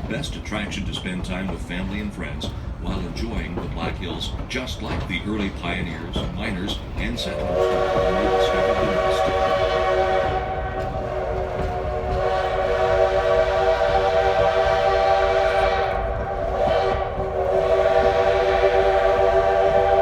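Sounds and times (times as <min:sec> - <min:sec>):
low rumble of moving train: 0:00.0 - 0:20.0
steam locomotive chime whistle: 0:07.2 - 0:20.0.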